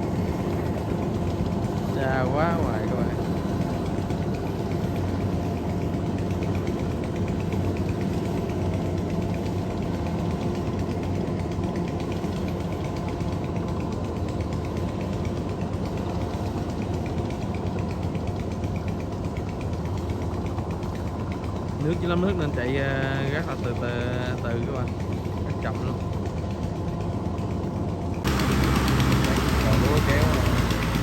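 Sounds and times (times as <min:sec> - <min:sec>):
combine harvester engine running: 0:00.0 - 0:31.0
faint rapid ticking: 0:00.1 - 0:31.0.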